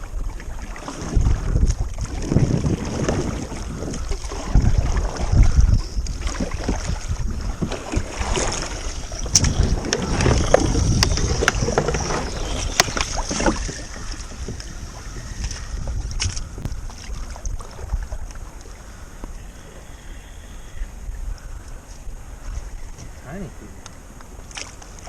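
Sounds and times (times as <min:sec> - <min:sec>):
wind rumbling on microphone: 0:00.0 - 0:25.0.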